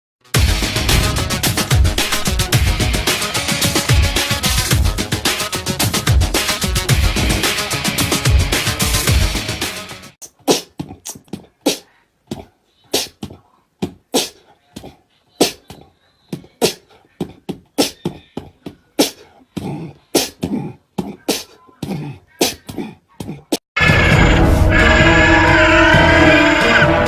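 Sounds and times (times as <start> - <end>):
music: 0.2 - 10.2, 23.8 - 27.0
sharp percussive hits: 0.4 - 4.8.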